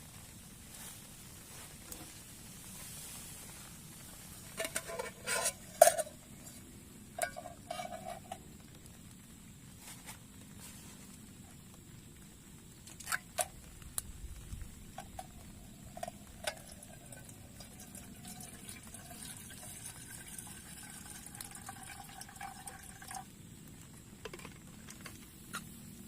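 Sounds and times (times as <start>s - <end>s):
faint steady hiss: 0.0s - 26.0s
metal utensils clinking on cookware: 4.5s - 8.4s, 15.0s - 20.1s.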